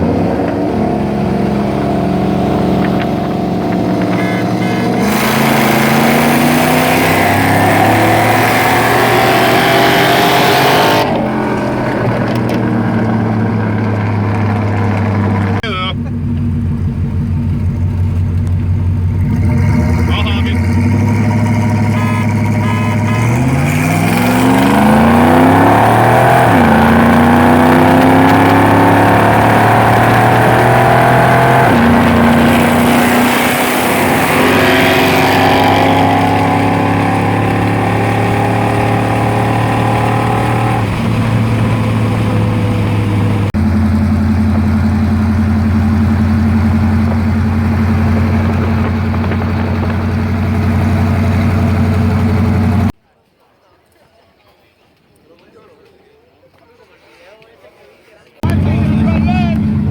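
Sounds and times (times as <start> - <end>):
steady engine drone: 0.0 - 23.4
car engine accelerating hard: 0.0 - 53.0, 58.4 - 59.9.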